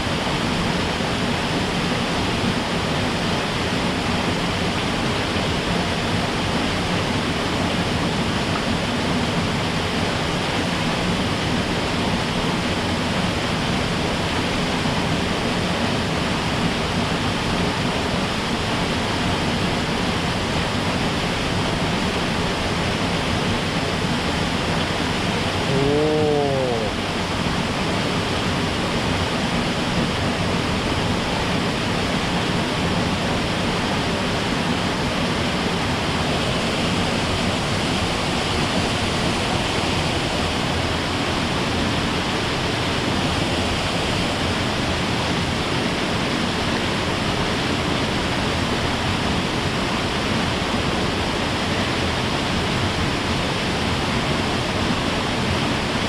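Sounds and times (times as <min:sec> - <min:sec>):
mountain stream rushing: 0:00.0 - 0:56.0
brief pitched vocal sound: 0:25.6 - 0:27.0.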